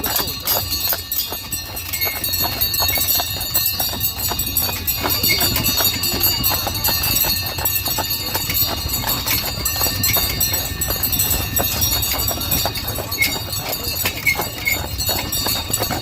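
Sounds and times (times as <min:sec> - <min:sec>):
horse hooves clip-clopping: 0:00.0 - 0:16.0.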